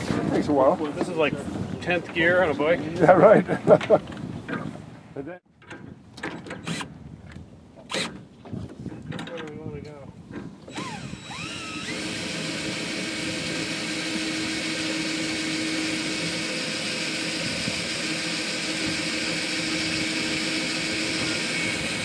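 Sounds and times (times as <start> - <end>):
motor humming and whining: 10.7 - 22.0.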